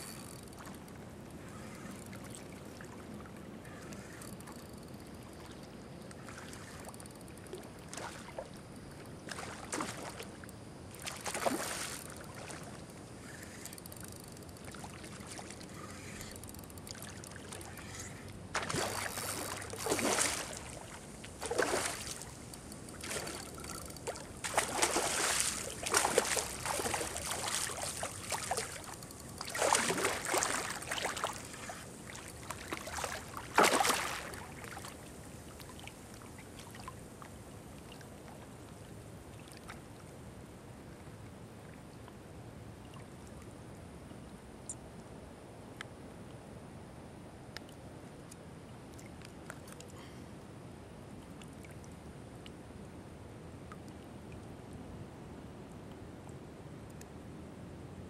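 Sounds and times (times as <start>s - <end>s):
low background hiss: 0.0s - 58.0s
water splashing and sloshing: 7.5s - 13.7s, 14.6s - 16.2s, 16.8s - 40.1s.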